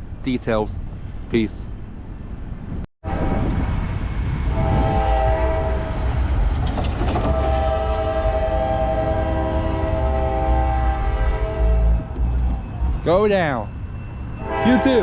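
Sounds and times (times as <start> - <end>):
passing train rumble: 0.0 - 15.0
locomotive air horn chord: 4.5 - 6.1, 7.2 - 12.1, 14.4 - 15.0.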